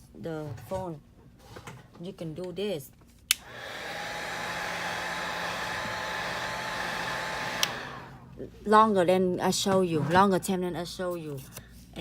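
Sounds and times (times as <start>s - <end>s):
hot-air heater blowing: 3.3s - 8.4s.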